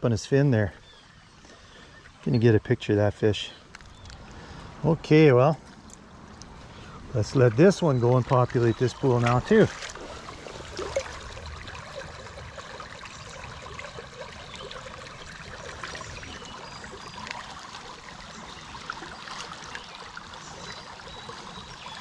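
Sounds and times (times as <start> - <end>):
creek water trickling: 0.0 - 22.0.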